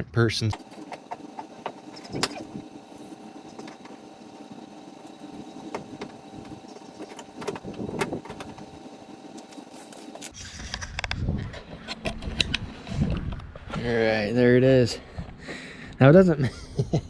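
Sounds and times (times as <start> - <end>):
steady hum: 0.5 - 10.4.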